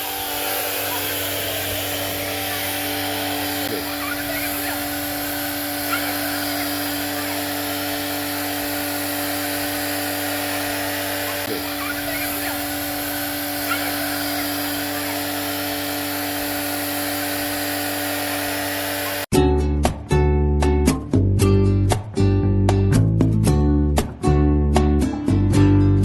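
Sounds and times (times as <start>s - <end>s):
pressure washer motor hum: 0.0s - 19.3s
water jet hissing: 0.0s - 19.3s.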